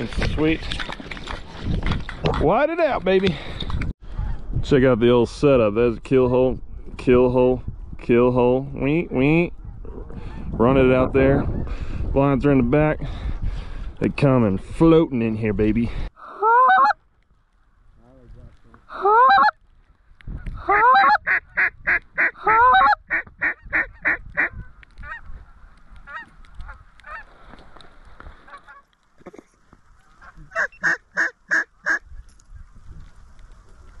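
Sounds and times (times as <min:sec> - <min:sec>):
geese honking: 0:16.2 - 0:17.0, 0:18.9 - 0:19.6, 0:20.6 - 0:25.3, 0:30.0 - 0:32.0.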